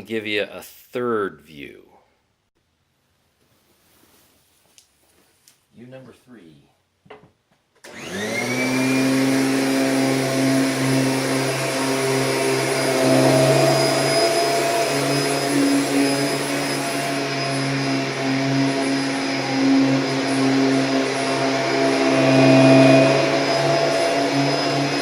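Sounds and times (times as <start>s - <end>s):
vacuum cleaner motor humming: 7.9s - 25.0s.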